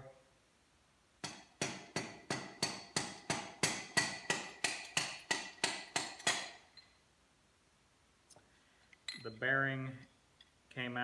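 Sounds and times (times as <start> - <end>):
metal tapping with ring: 8.9 - 9.5.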